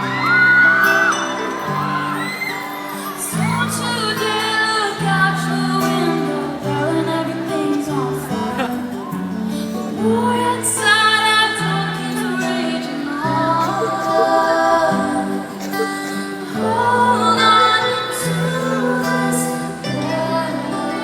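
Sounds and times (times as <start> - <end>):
woman singing: 2.9 - 21.0.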